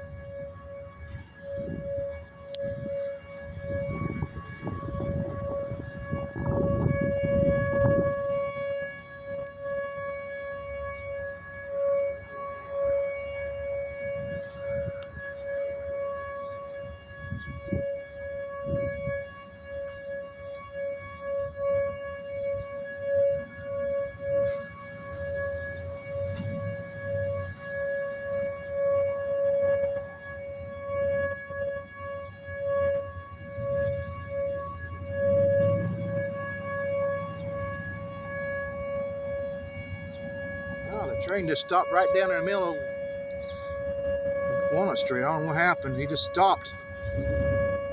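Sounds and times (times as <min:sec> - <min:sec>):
warning siren long tone: 0:00.0 - 0:47.9
low rumble bursts: 0:46.9 - 0:47.9.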